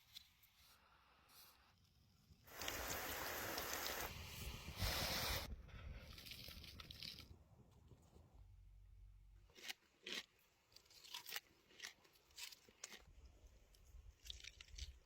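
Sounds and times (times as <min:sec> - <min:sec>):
crunchy food being chewed: 0:06.0 - 0:07.3, 0:09.4 - 0:15.0.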